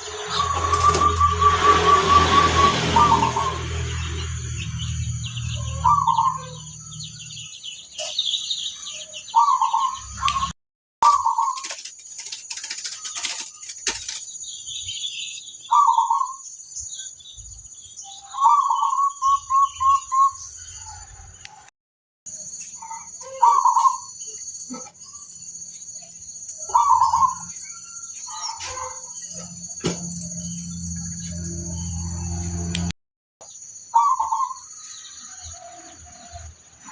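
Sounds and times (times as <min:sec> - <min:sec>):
high-pitched whine: 0:00.0 - 0:07.5, 0:29.0 - 0:32.9
doves cooing: 0:23.3 - 0:24.0, 0:26.7 - 0:27.5.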